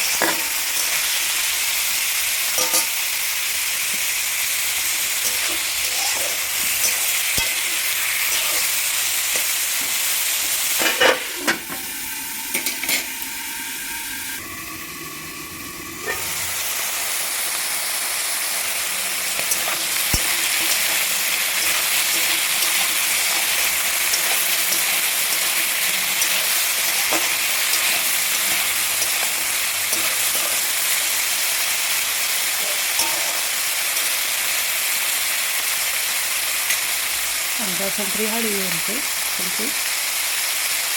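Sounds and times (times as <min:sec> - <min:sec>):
food sizzling in hot oil: 0:00.0 - 0:40.9.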